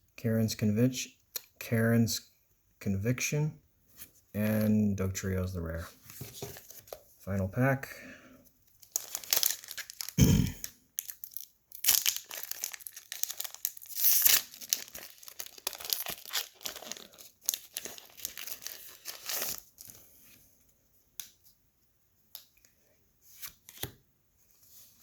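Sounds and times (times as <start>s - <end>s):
foil pack tearing and crinkling: 8.8s - 10.2s, 11.0s - 19.8s.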